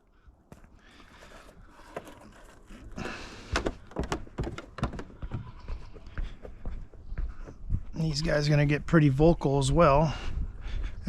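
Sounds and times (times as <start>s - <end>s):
irregular knocks and thuds: 3.0s - 7.9s.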